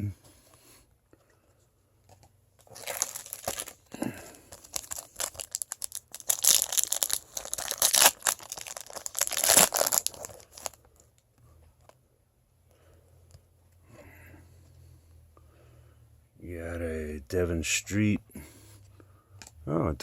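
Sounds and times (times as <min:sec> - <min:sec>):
wrapper tearing and crinkling: 0:02.6 - 0:03.9, 0:04.5 - 0:10.8.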